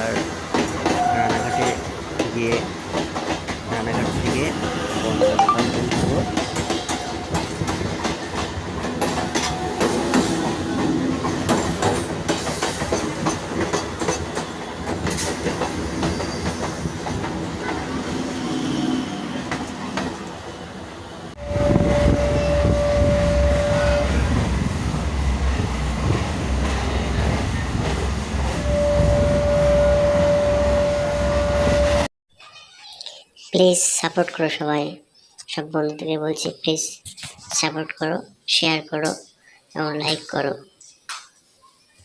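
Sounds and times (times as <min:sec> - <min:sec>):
deep train rumble: 0:00.0 - 0:32.1
train horn blasts: 0:21.4 - 0:24.3, 0:28.6 - 0:32.1.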